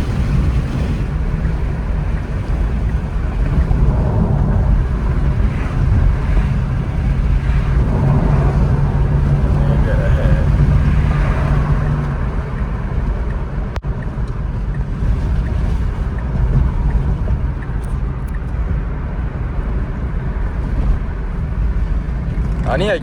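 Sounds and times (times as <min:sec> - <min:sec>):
air rushing past: 0:03.2 - 0:13.8.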